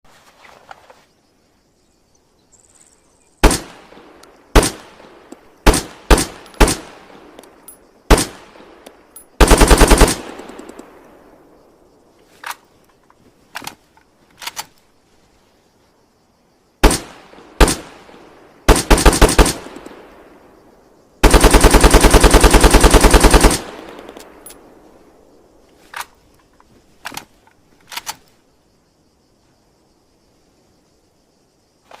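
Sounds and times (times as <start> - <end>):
gunshots and automatic bursts: 3.4 - 7.4, 8.1 - 8.7, 9.3 - 10.8, 16.8 - 20.0, 21.2 - 24.5.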